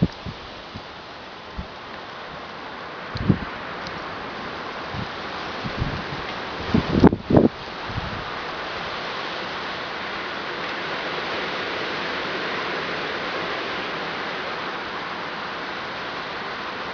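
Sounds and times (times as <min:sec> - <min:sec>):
wind rustling tree leaves: 0:00.0 - 0:16.9.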